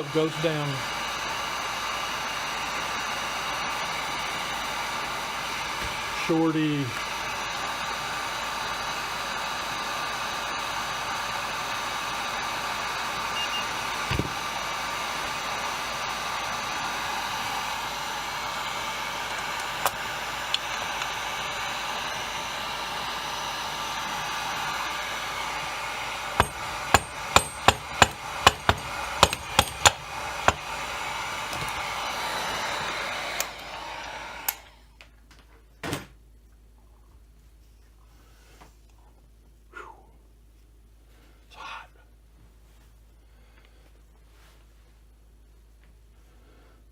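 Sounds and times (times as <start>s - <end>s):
heat gun blowing: 0.0s - 34.9s.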